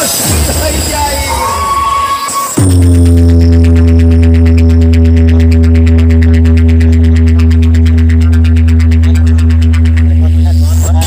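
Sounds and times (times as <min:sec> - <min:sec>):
electronic dance music: 0:00.0 - 0:11.0
deep bass tone: 0:00.2 - 0:11.0.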